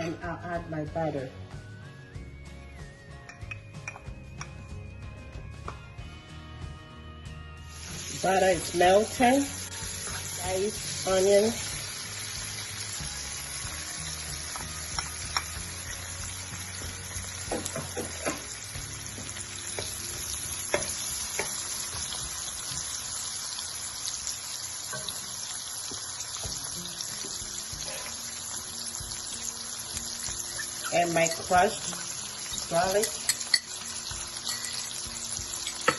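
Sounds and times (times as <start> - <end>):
onion sizzling in butter: 7.7 - 35.9.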